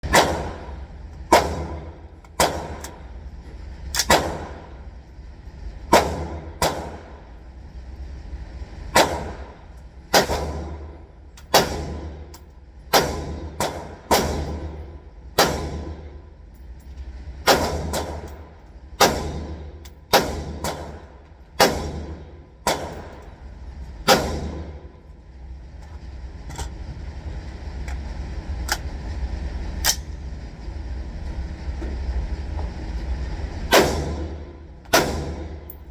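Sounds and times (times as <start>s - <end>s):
rifle shots with echo: 0.1s - 2.8s, 4.1s - 4.7s, 5.9s - 7.2s, 9.0s - 10.9s, 11.5s - 12.2s, 12.9s - 14.7s, 15.4s - 16.1s, 17.5s - 18.3s, 19.0s - 23.2s, 24.1s - 24.9s, 33.7s - 35.7s.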